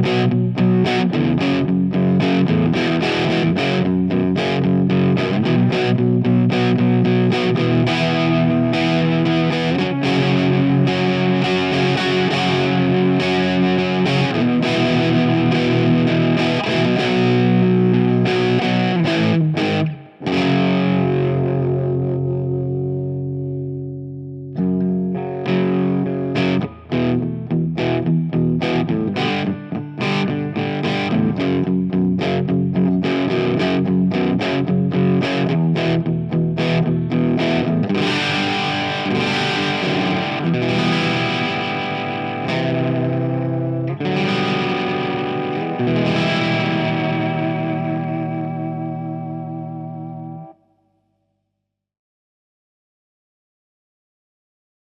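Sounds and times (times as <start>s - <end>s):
distorted electric guitar: 0.0s - 50.6s.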